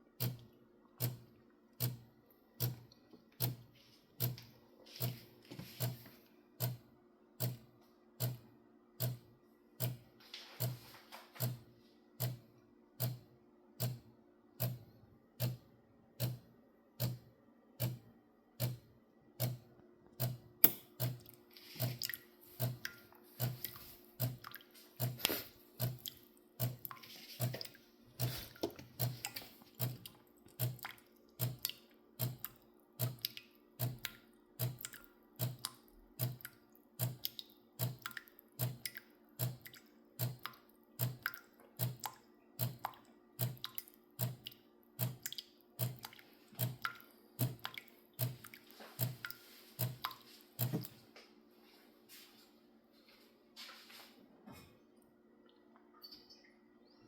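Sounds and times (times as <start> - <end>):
coffee machine pump pulsing: 20.2 - 22.8, 23.4 - 24.4, 25.0 - 33.2
water dripping: 20.6 - 25.2, 25.8 - 50.9.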